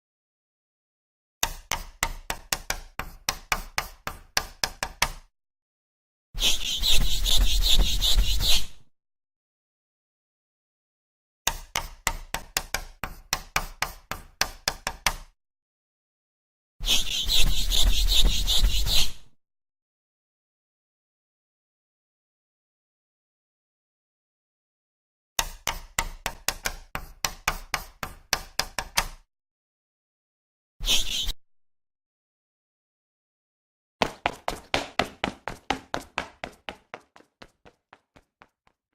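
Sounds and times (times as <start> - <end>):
chalk tapping on blackboard: 1.4 - 5.3, 6.4 - 8.7, 11.5 - 15.3, 16.9 - 19.2, 25.4 - 29.2, 34.0 - 38.3.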